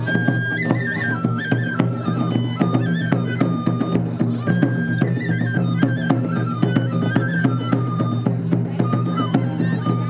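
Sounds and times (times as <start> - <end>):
bamboo flute melody: 0.0 - 10.0
drum strokes: 0.0 - 10.0.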